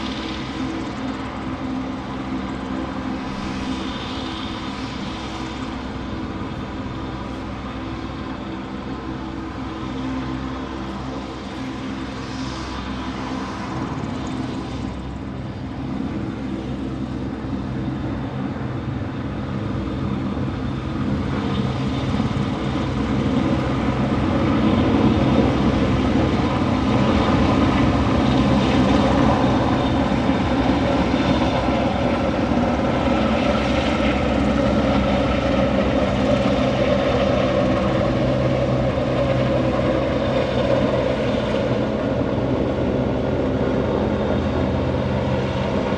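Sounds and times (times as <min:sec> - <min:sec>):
engine drone: 0:00.0 - 0:45.9.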